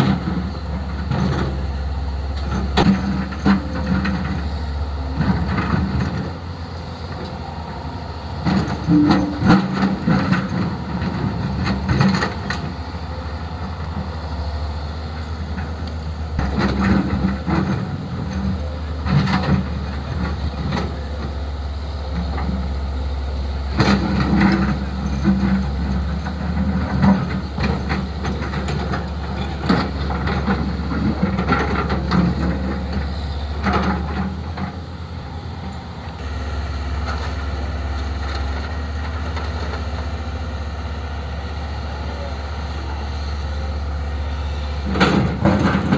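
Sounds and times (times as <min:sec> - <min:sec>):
excavator diesel engine running: 0:00.0 - 0:45.9
digging knocks and clanks: 0:08.2 - 0:14.0.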